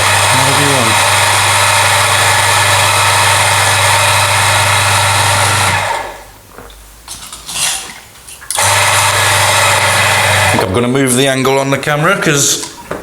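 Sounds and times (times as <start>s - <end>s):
electric water pump buzzing: 0.0s - 6.4s, 8.5s - 10.7s.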